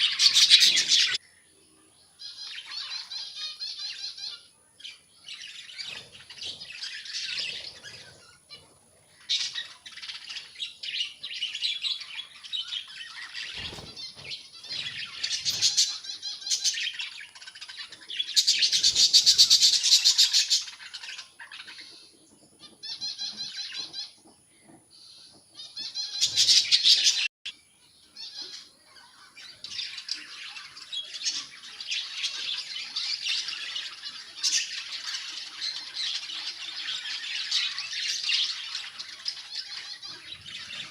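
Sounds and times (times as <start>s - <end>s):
budgerigars chattering and chirping: 0.0s - 1.2s, 2.2s - 27.3s.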